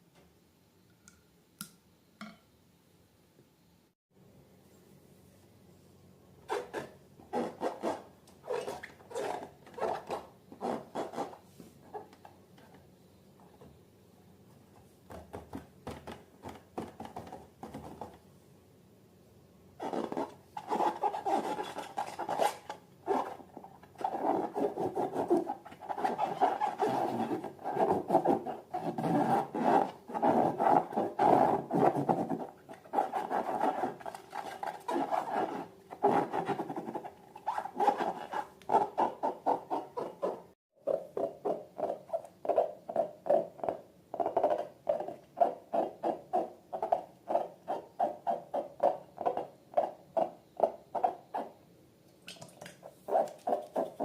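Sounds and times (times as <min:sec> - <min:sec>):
faint scratches: 0:19.8 - 0:51.5, 0:53.0 - 0:54.0.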